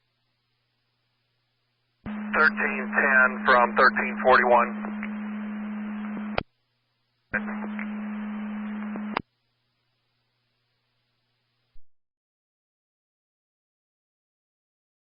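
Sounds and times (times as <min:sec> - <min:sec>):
steady low hum: 0:00.0 - 0:11.8
radio static hiss: 0:02.1 - 0:06.5, 0:07.3 - 0:09.2
radio squelch click: 0:04.7 - 0:05.3, 0:05.9 - 0:06.5, 0:07.3 - 0:09.3.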